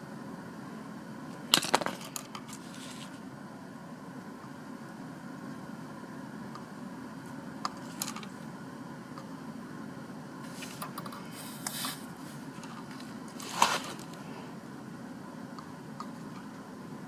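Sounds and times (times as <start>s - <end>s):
steady low hum: 0.0s - 17.0s
hand tools clicking and scraping: 1.6s - 3.2s, 10.5s - 14.2s.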